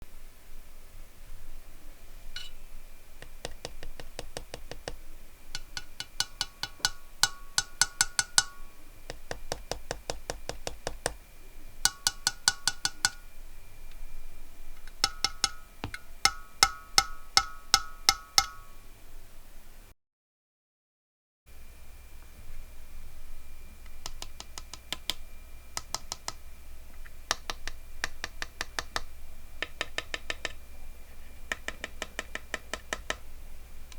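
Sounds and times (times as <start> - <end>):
metallic ping ringing: 2.4 - 2.7, 5.6 - 8.8, 11.9 - 13.3, 15.0 - 18.9.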